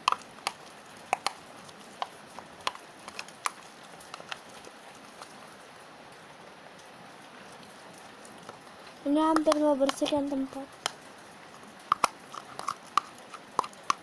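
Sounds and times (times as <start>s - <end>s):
wet clicks and taps: 0.0s - 1.4s, 9.2s - 11.0s, 11.9s - 14.0s
slime being stirred: 0.0s - 5.5s, 8.5s - 11.0s, 11.8s - 14.0s.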